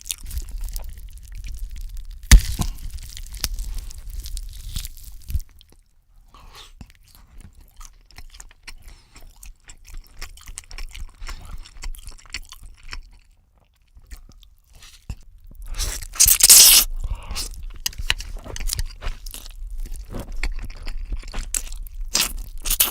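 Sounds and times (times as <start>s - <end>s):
loud crunching bite: 0.0s - 5.5s, 14.1s - 22.9s
person chewing crispy food: 0.0s - 22.9s.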